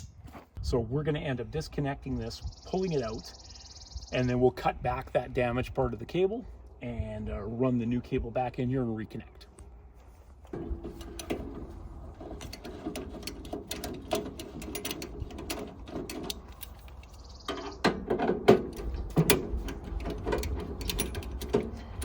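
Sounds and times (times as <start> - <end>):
hand tools ratcheting on metal: 10.6 - 22.0.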